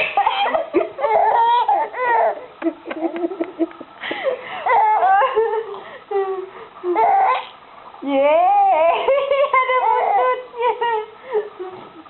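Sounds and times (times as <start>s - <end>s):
toddler babbling and laughing: 6.9s - 7.5s, 8.4s - 10.8s.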